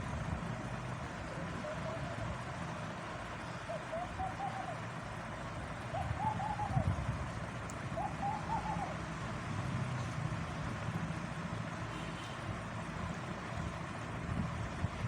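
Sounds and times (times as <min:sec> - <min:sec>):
bird calling: 0:01.3 - 0:07.1, 0:07.7 - 0:09.2.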